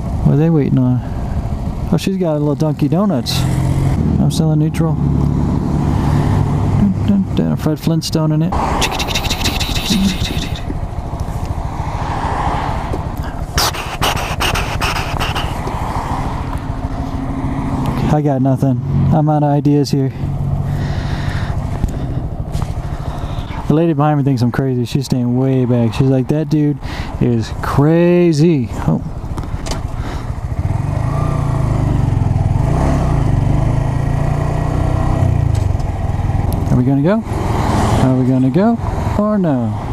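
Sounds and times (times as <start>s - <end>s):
motorcycle engine idling: 0.0s - 5.4s, 8.9s - 18.2s, 20.0s - 24.4s, 26.2s - 32.7s, 33.3s - 37.1s
sharp clicks: 8.8s - 10.8s.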